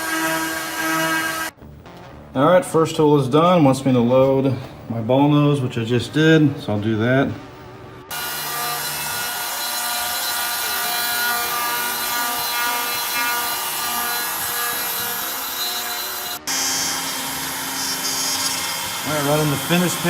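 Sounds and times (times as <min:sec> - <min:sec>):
bit cutting through wood: 0:00.0 - 0:01.6, 0:08.1 - 0:20.0.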